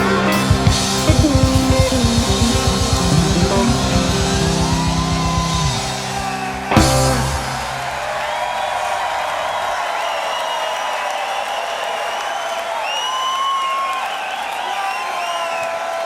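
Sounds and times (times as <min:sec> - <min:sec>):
rock song with guitar and drums: 0:00.0 - 0:08.0.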